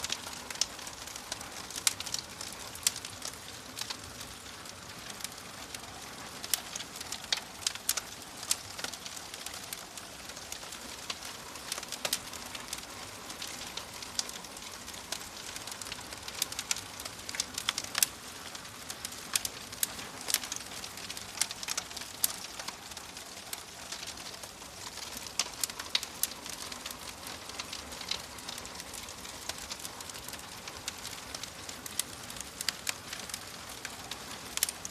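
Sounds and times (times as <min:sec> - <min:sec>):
wood fire crackling and popping: 0:00.0 - 0:34.9.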